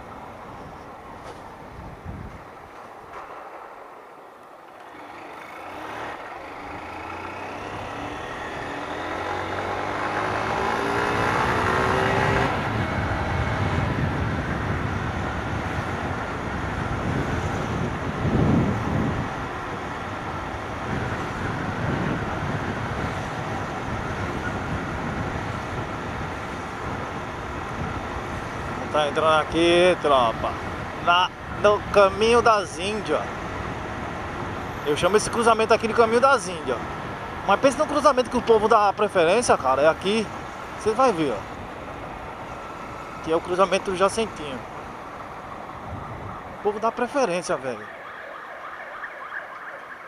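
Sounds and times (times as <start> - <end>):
wind and road noise: 0.0 - 50.0
motorcycle engine accelerating: 4.8 - 14.5.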